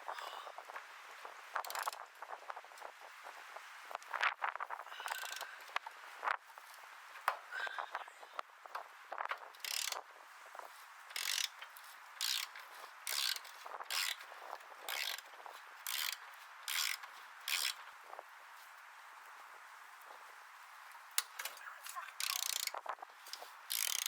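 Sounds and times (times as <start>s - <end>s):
ratchet wrench clicking: 1.6s - 2.0s, 5.0s - 5.7s, 9.5s - 10.0s, 11.1s - 14.2s, 14.8s - 17.8s, 22.2s - 24.0s.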